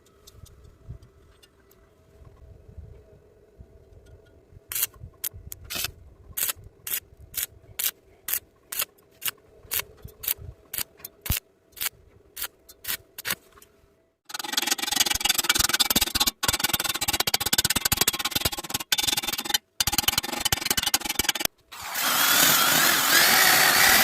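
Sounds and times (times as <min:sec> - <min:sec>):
hand tool scraping metal: 0:14.3 - 0:24.0.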